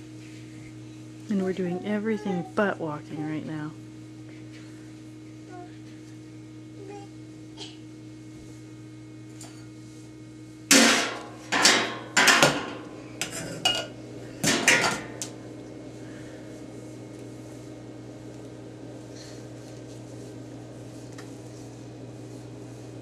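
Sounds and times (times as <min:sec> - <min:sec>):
steady low hum: 0:00.0 - 0:23.0
metal pots and pans clanging: 0:10.7 - 0:15.2.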